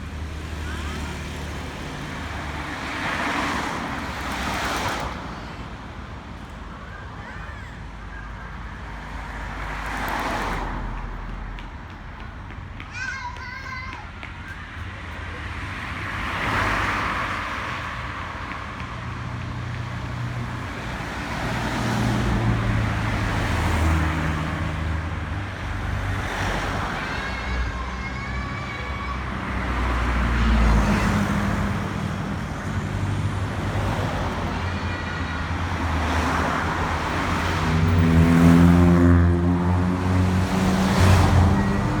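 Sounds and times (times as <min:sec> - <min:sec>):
vehicles driving past: 0:00.0 - 0:42.0.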